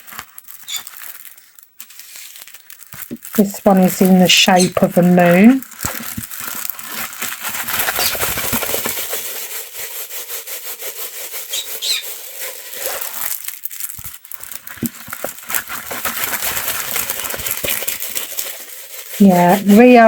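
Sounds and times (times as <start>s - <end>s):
plastic packaging crinkling: 0.0s - 20.0s
brief high squeaks: 0.6s - 0.9s.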